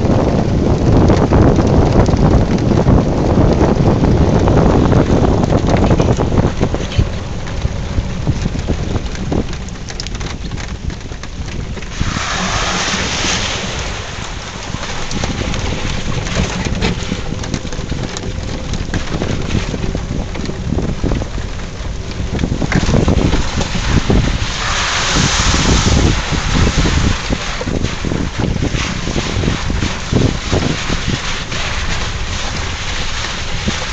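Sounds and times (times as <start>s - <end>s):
atv engine running: 0.0s - 33.9s
tyres churning through water: 0.0s - 33.9s
wind buffeting microphone: 0.0s - 33.9s.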